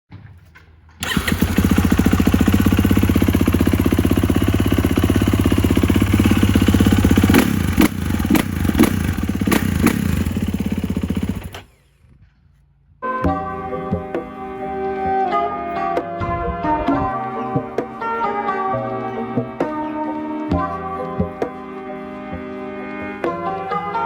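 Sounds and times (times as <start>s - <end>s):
motorcycle engine idling: 1.0s - 11.9s
engine throttle blips: 1.0s - 12.2s.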